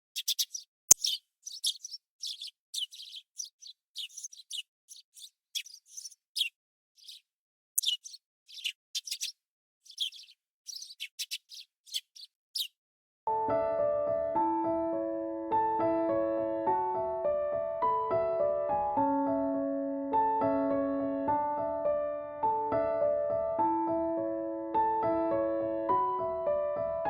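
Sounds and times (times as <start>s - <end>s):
small birds chirping: 0.0s - 12.8s.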